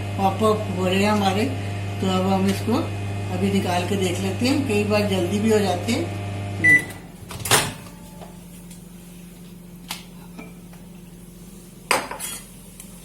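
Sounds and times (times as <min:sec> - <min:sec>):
microwave oven hum: 0:00.0 - 0:13.0
microwave beep: 0:06.5 - 0:07.0.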